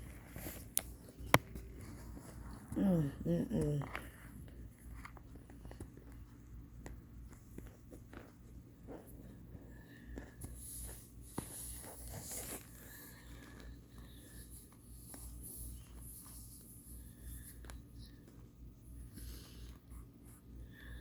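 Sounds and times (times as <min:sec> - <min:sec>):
low steady hum: 0:00.0 - 0:21.0
crunching and chewing: 0:04.0 - 0:14.4.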